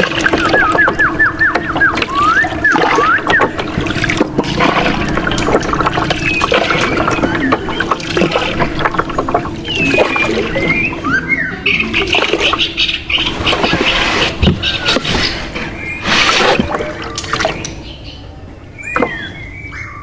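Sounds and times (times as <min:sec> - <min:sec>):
water splashing and trickling: 0:00.0 - 0:17.9
whistled bird calls: 0:00.1 - 0:03.9, 0:06.0 - 0:08.6, 0:09.6 - 0:20.0.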